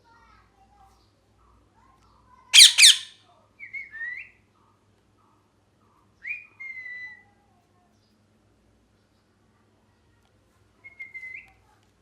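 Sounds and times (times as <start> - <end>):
parrot screeching and whistling: 2.6 - 3.2.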